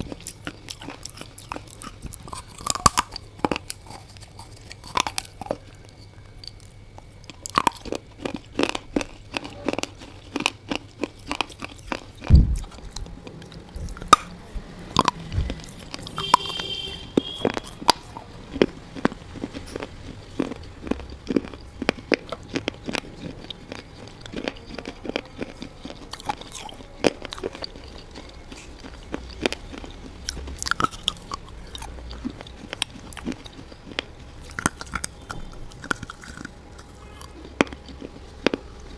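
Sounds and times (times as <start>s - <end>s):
chewing brittle clay crunches: 0.0s - 38.9s
heavy low thump: 12.3s - 12.7s.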